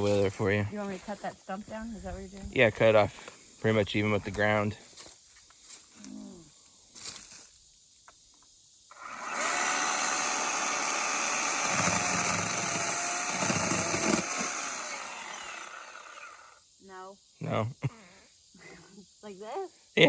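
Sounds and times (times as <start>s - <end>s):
battery chainsaw whining: 8.9s - 16.6s.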